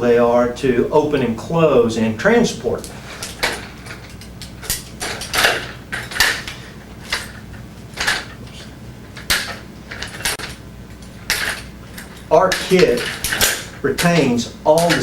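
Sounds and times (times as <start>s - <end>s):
stroller frame clicking and rattling: 3.2s - 15.0s.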